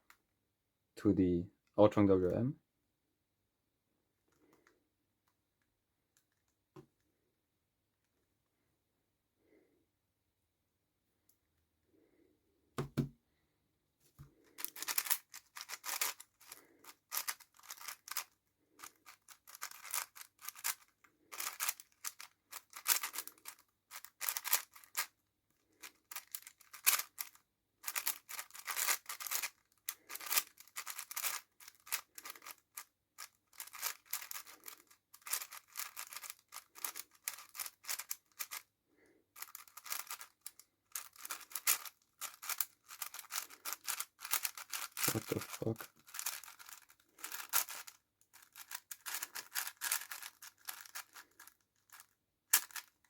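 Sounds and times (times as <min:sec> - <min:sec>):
puzzle cube clicking: 0:14.5 - 0:25.1, 0:25.8 - 0:38.6, 0:39.4 - 0:52.9.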